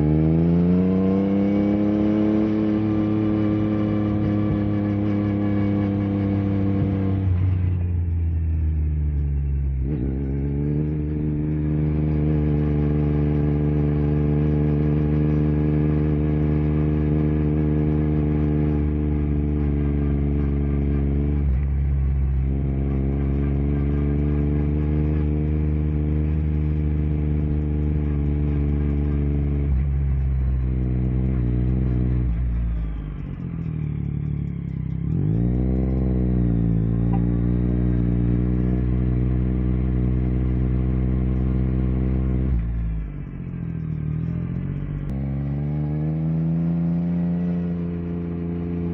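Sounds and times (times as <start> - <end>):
motorcycle engine while riding: 0.0 - 48.9.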